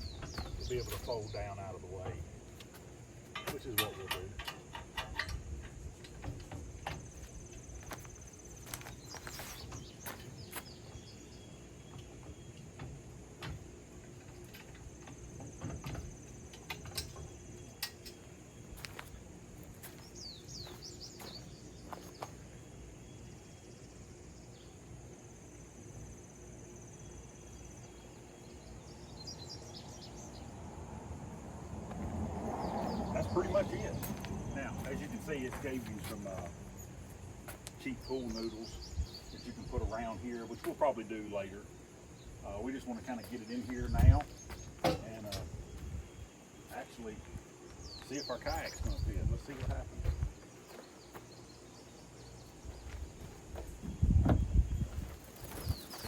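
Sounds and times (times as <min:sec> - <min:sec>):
bird chirps: 0:00.0 - 0:01.7, 0:19.9 - 0:24.8, 0:37.8 - 0:40.9, 0:41.7 - 0:56.0
metal rack clicking and knocking: 0:03.3 - 0:06.6.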